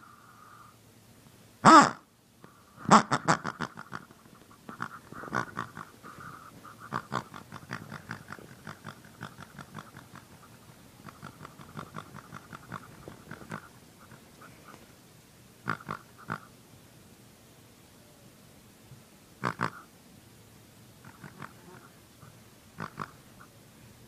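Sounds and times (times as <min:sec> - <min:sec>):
pig grunting and snorting: 0:04.7 - 0:14.2, 0:15.6 - 0:16.5, 0:19.4 - 0:19.9, 0:21.0 - 0:22.0, 0:22.8 - 0:23.2.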